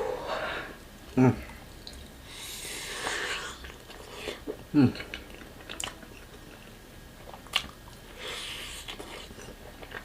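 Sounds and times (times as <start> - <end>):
person chewing food: 3.0 - 10.0.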